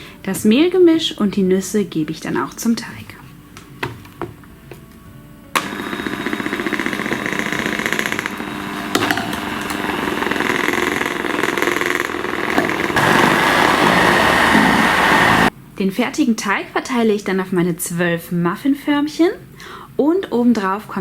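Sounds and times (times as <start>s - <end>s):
electric hand mixer in batter: 5.6s - 15.5s.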